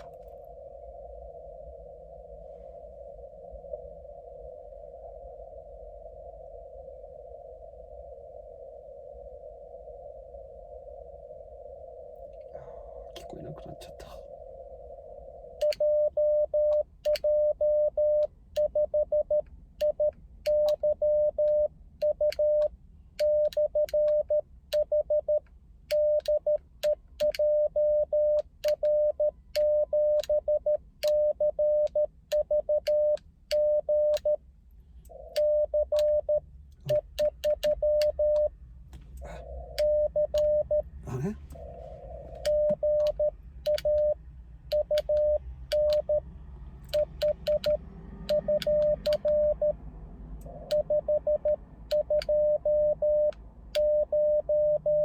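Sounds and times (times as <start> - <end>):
morse code tone: 35.2 - 38.5, 39.4 - 41.8, 42.4 - 46.2, 46.9 - 49.8, 50.5 - 55.0
keying clicks: 35.3 - 38.5, 42.4 - 44.1, 44.7 - 46.1, 46.9 - 49.4.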